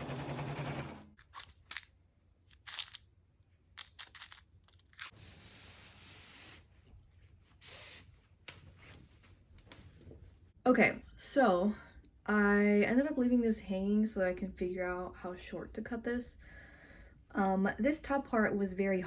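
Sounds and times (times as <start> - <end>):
sewing machine stitching: 0.0 - 1.1.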